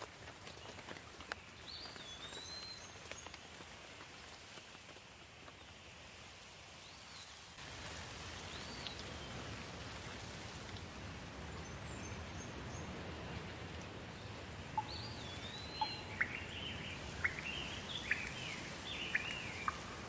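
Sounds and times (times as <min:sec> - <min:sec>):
light rain falling: 0:00.0 - 0:20.0
bird whistled calls: 0:14.8 - 0:20.0.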